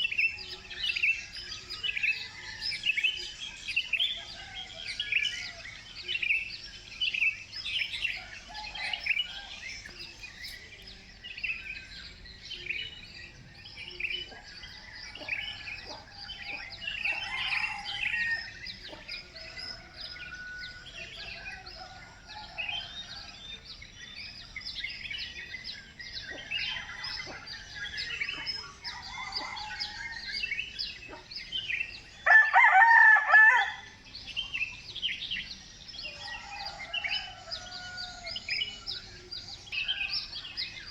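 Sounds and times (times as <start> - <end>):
birds chirping: 0.0 - 40.9
rooster crowing: 8.1 - 9.9, 14.7 - 18.7, 26.6 - 30.6, 32.2 - 34.0, 36.0 - 39.0.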